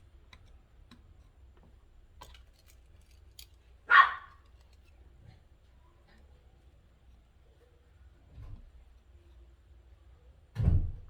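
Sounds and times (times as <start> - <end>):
faint small clicks of hand work: 0.3 - 3.6, 4.4 - 7.7
dog barking: 3.9 - 4.4.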